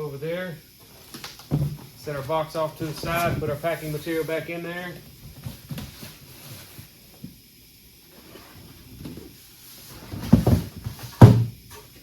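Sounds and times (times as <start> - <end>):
cardboard box knocks and rustles: 1.5 - 1.9, 10.0 - 11.6.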